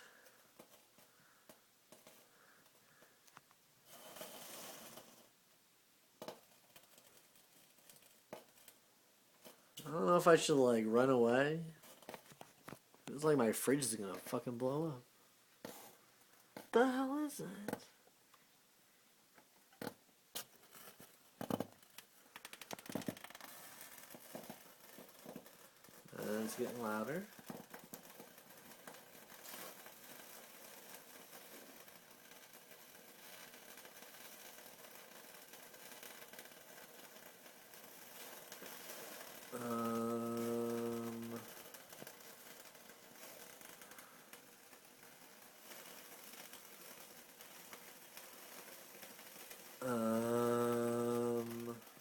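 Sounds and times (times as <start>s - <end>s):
soft hiss: 0.0s - 52.0s
freezer ticks and crackles: 6.2s - 8.8s, 19.7s - 52.0s.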